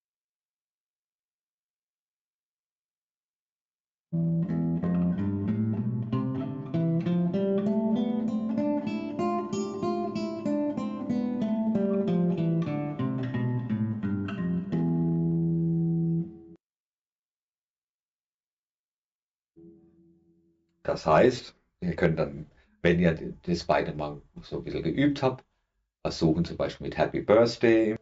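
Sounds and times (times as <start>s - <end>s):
classical guitar fingerstyle: 4.2s - 16.6s.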